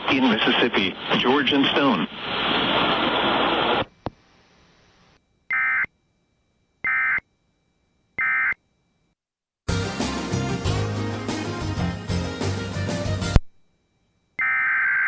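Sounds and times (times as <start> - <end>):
music: 9.7 - 13.4
warbling digital data tones: 14.4 - 15.0.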